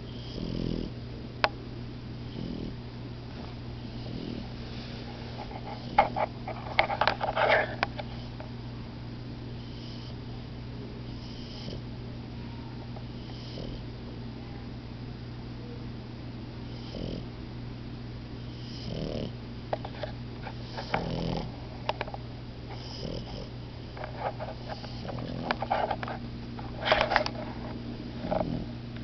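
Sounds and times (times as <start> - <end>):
dogs snoring: 0.0 - 1.0, 2.2 - 2.8, 3.4 - 4.6, 5.4 - 8.4, 9.5 - 10.4, 11.0 - 11.9, 13.0 - 13.9, 16.6 - 17.4, 18.4 - 22.1, 22.7 - 28.8.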